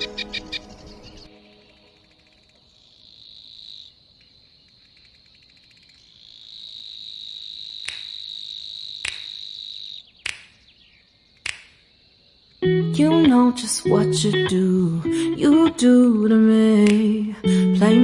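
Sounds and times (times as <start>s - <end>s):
insect trilling: 0.0s - 10.1s
sharp clicks: 10.2s - 10.6s, 11.4s - 11.8s, 16.8s - 17.1s.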